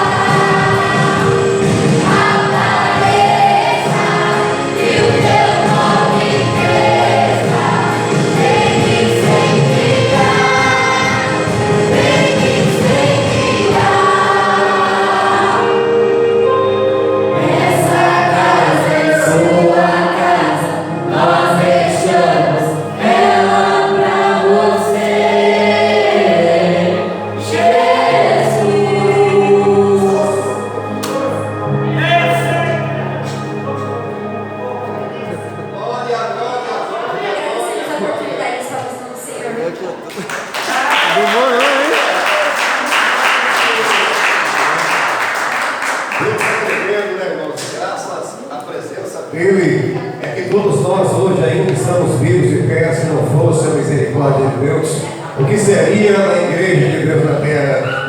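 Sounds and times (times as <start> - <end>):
group singing worship song: 0.0 - 34.6
instrumental accompaniment: 0.0 - 37.5.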